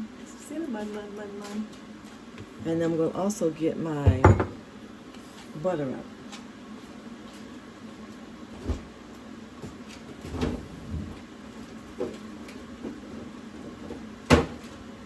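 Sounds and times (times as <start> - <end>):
kitchen items knocking: 4.0 - 4.6.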